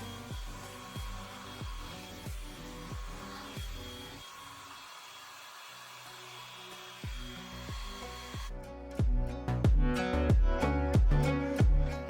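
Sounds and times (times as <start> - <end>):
background music with bass: 0.0 - 4.2, 7.1 - 12.0
hair dryer running: 0.0 - 8.6.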